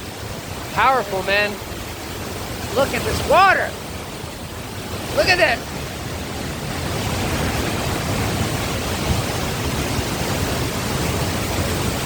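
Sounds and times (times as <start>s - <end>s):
waterfall rushing: 0.0s - 12.0s
wind on microphone: 3.9s - 12.0s.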